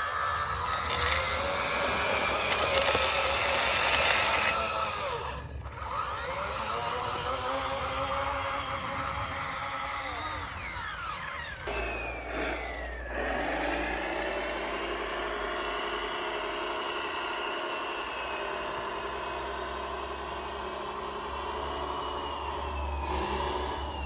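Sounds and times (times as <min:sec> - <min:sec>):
mechanical whine of model: 0:00.0 - 0:24.0.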